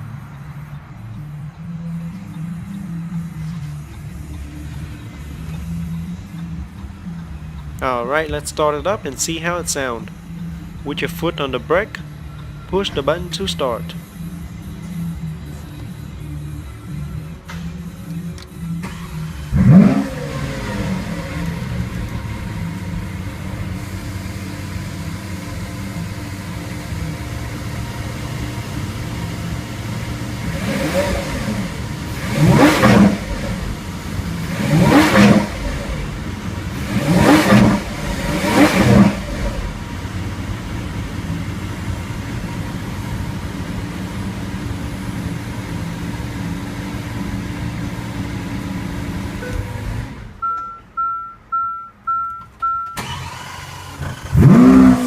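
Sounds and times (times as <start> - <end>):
car engine idling and revving: 0.0 - 55.0
high electronic beep: 50.4 - 53.0.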